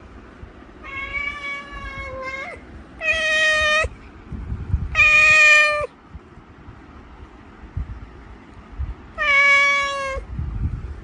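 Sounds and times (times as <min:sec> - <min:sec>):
cat meowing: 0:00.8 - 0:03.9, 0:04.9 - 0:06.0, 0:09.2 - 0:10.3.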